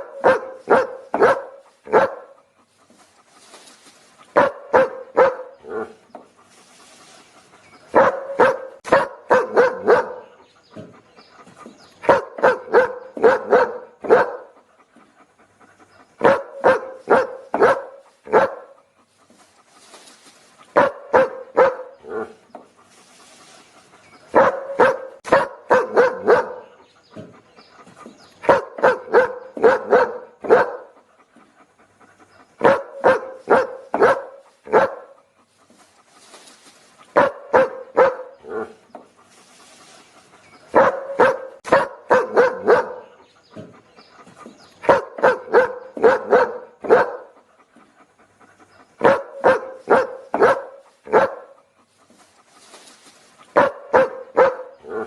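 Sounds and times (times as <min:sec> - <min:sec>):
dog barking: 0:00.0 - 0:02.4, 0:04.3 - 0:06.0, 0:07.9 - 0:10.4, 0:12.0 - 0:14.6, 0:16.2 - 0:18.8, 0:20.8 - 0:22.4, 0:24.3 - 0:27.3, 0:28.4 - 0:31.0, 0:32.6 - 0:35.2, 0:37.1 - 0:38.8, 0:40.7 - 0:43.7, 0:44.8 - 0:47.4, 0:49.0 - 0:51.6, 0:53.5 - 0:55.0.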